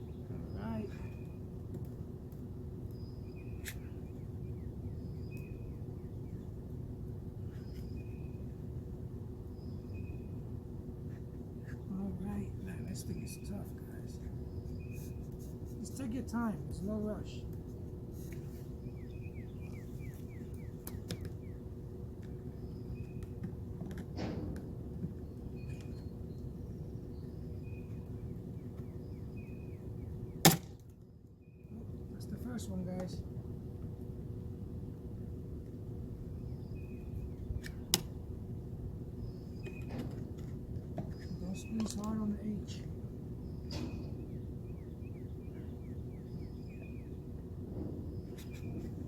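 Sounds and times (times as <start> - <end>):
low outdoor rumble: 0.0 - 49.0
bird chirping: 2.9 - 6.6, 7.5 - 8.6, 9.5 - 10.4, 11.1 - 17.4, 18.6 - 21.7, 25.2 - 30.4, 36.3 - 37.9, 41.0 - 47.4
bird chirps: 2.9 - 6.6, 18.8 - 21.7, 43.4 - 47.2.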